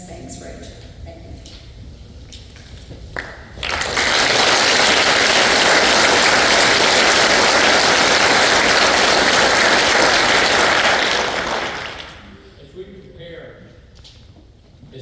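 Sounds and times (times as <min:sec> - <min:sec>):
crowd applauding: 0:03.2 - 0:12.6.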